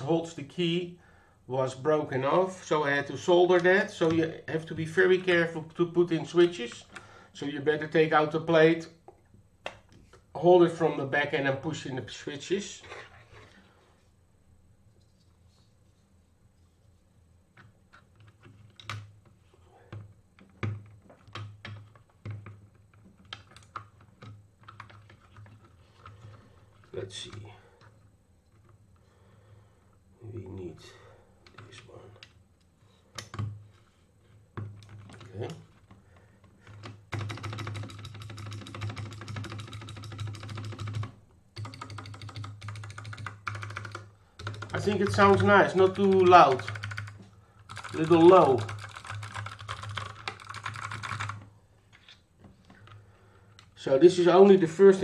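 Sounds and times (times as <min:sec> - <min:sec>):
clicky mechanical keyboard keys: 0:36.8 - 0:51.4.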